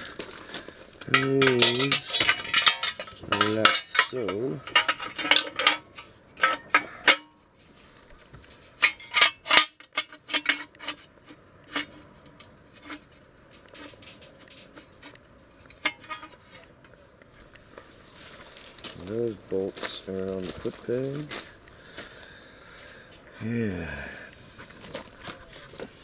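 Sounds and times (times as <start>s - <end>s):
metal tools clinking and clattering: 0.1s - 7.4s, 8.8s - 11.0s, 11.7s - 13.2s, 13.8s - 16.7s.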